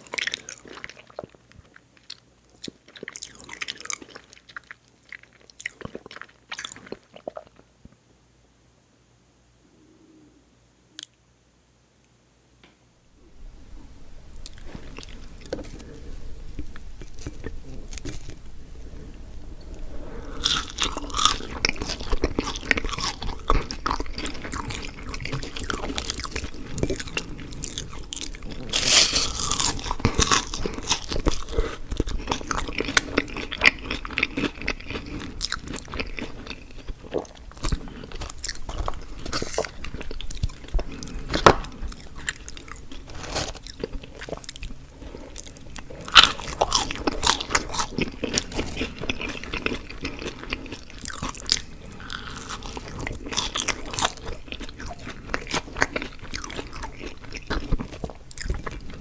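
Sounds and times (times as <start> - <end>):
person biting and chewing: 14.4 - 44.8, 45.4 - 59.0.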